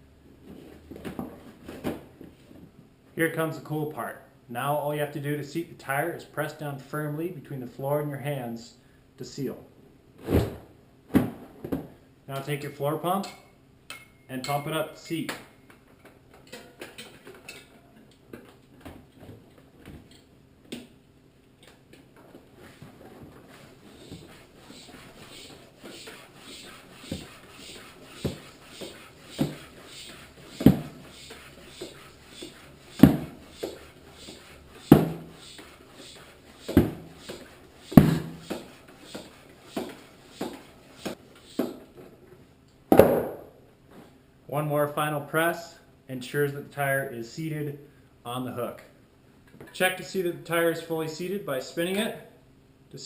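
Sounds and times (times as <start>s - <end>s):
floor pump strokes: 22.3s - 42.0s.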